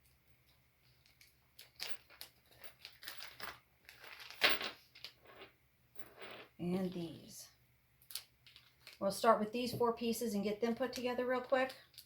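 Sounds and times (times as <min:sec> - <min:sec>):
plastic bags crinkling: 0:01.0 - 0:05.2.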